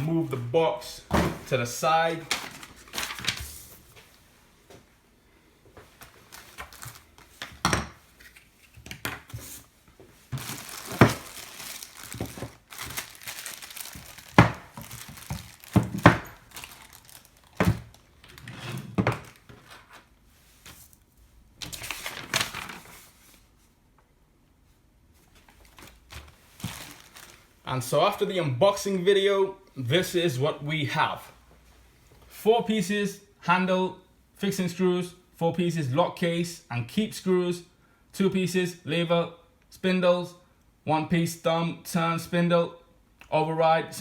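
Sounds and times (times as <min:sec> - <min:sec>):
packaging crinkling and rustling: 0:01.3 - 0:04.2, 0:05.8 - 0:07.6, 0:09.3 - 0:21.0, 0:21.6 - 0:23.5, 0:25.2 - 0:27.6.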